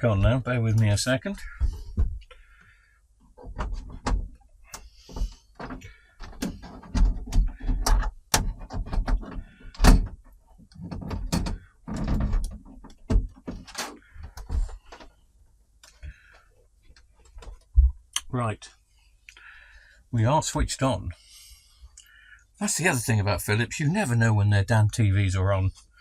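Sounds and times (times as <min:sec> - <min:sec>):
knocks and bumps of handling: 0:01.4 - 0:02.6, 0:03.3 - 0:15.2, 0:15.9 - 0:18.1.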